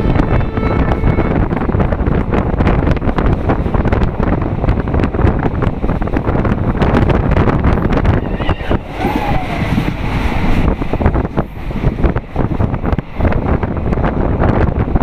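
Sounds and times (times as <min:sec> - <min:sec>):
train carriage rumble: 0:00.0 - 0:15.0
wind buffeting microphone: 0:00.0 - 0:15.0.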